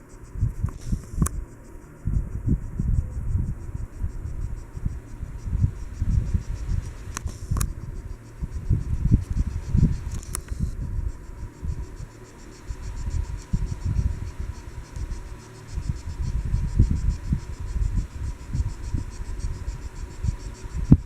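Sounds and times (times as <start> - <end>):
crickets chirping: 0.0 - 21.0.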